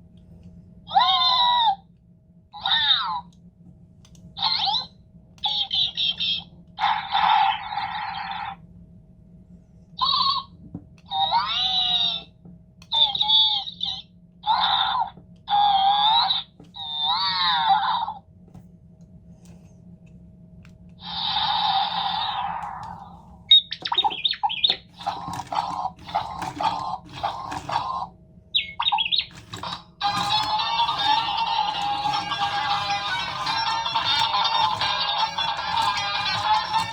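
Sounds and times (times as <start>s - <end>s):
toy robot warbling chirps: 15.5s - 17.8s, 21.0s - 36.9s
toy robot music: 21.1s - 36.9s.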